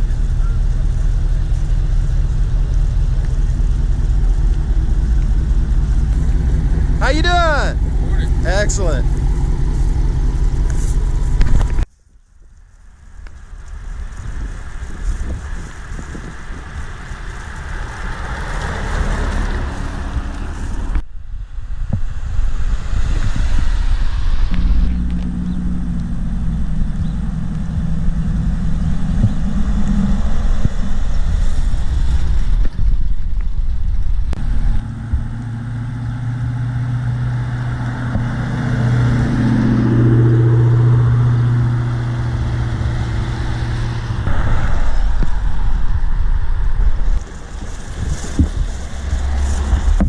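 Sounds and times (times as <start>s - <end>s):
car engines running: 0.0s - 50.0s.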